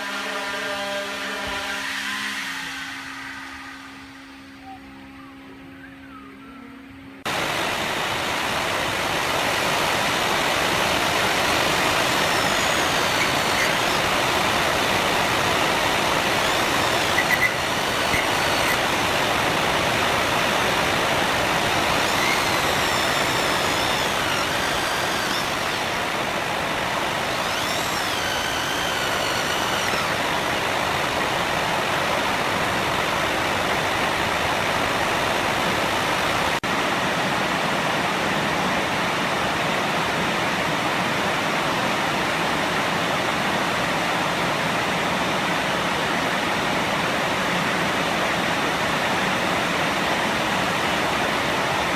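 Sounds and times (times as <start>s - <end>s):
faint high squeals: 2.9s - 7.1s, 11.7s - 18.9s, 21.7s - 26.2s, 27.2s - 30.8s
gouge cutting wood on lathe: 10.8s - 31.6s.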